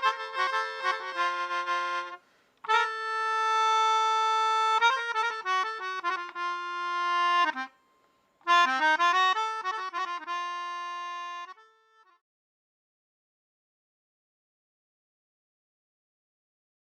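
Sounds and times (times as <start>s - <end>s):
free-reed instrument melody: 0.0s - 12.2s.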